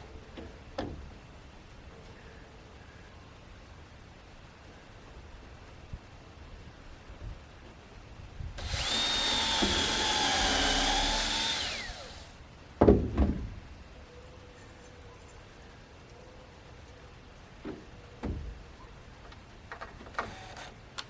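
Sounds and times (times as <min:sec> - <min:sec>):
power drill running: 0:08.6 - 0:12.4, 0:20.3 - 0:20.7.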